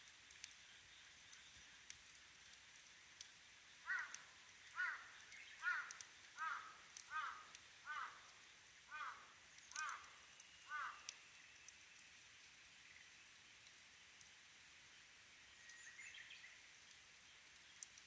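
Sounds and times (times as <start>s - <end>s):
campfire pops and crackles: 0.0s - 18.0s
bird calling: 3.9s - 8.3s, 8.9s - 10.1s, 10.7s - 11.1s.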